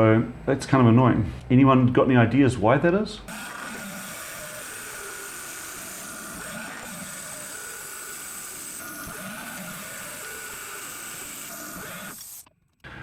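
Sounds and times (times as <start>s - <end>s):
lathe running with high whine: 3.3s - 13.0s.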